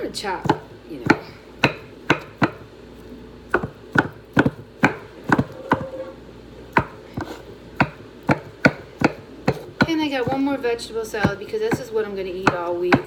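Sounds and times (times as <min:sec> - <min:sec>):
knife chopping on cutting board: 0:00.4 - 0:02.7, 0:03.5 - 0:06.0, 0:06.7 - 0:10.5, 0:11.2 - 0:13.0.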